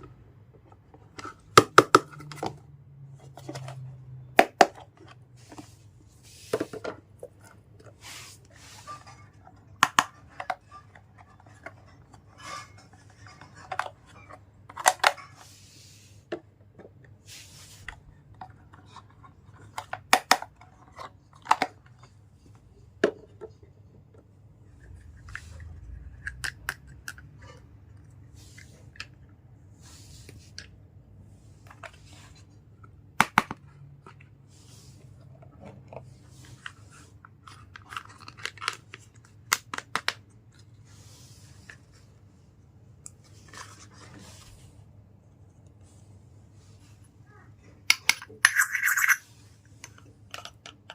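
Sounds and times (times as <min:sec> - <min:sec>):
plastic and cardboard rustling: 0:33.7 - 0:47.5.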